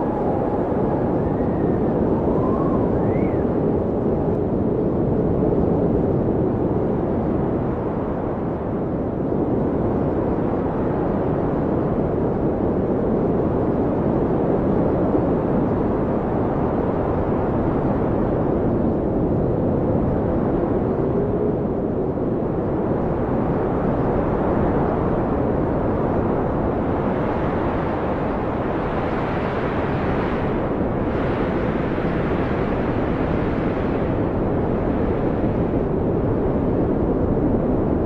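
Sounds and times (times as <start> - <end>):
faint howling whistle: 0.0 - 3.8
blizzard wind rushing: 0.0 - 38.0.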